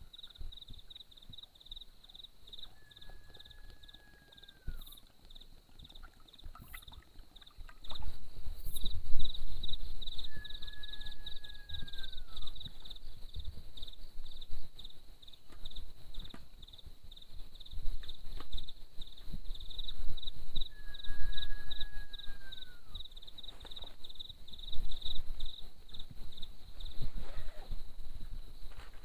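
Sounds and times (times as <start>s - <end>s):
insects chirping: 0.0s - 29.0s
long whistled call: 10.2s - 12.6s, 20.6s - 23.1s.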